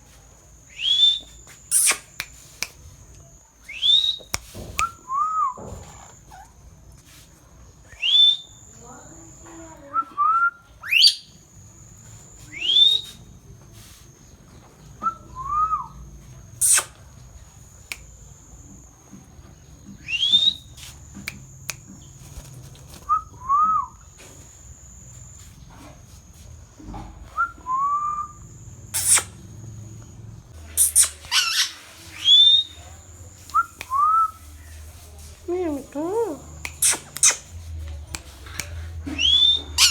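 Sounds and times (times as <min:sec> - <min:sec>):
parrot whistles and chirps: 0:00.7 - 0:02.3, 0:03.7 - 0:06.5, 0:07.9 - 0:08.6, 0:10.0 - 0:11.4, 0:12.4 - 0:13.2, 0:15.0 - 0:16.0, 0:16.6 - 0:17.0, 0:20.0 - 0:20.9, 0:23.0 - 0:24.0, 0:27.3 - 0:29.4, 0:30.7 - 0:34.8, 0:36.2 - 0:37.5, 0:39.1 - 0:39.9
parrot squawks: 0:30.8 - 0:32.7, 0:39.2 - 0:39.9.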